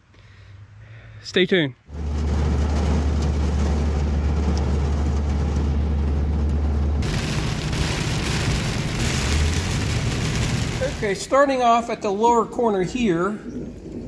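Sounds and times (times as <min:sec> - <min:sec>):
road noise hiss: 0:00.0 - 0:12.0
vehicle engine drone: 0:01.9 - 0:11.3.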